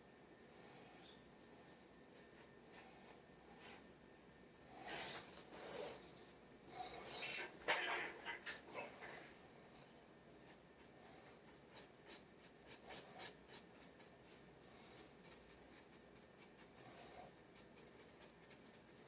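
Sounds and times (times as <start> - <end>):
pen scratching on paper: 10.4 - 19.0.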